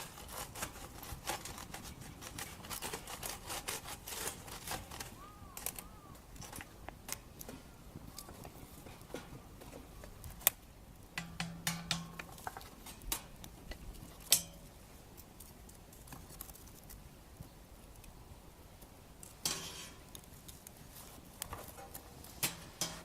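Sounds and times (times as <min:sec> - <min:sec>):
sharp clicks and knocks: 0:11.2 - 0:14.6.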